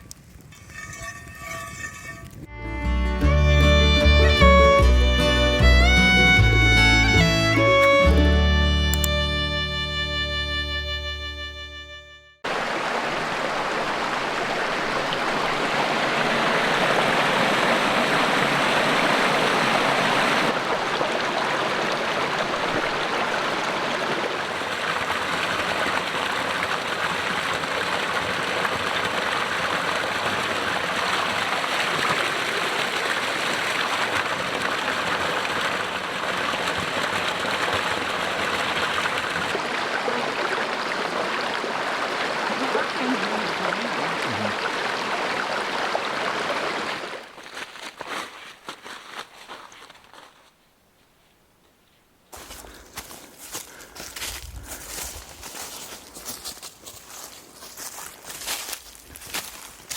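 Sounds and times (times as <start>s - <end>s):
stream of water rushing: 12.4s - 47.6s.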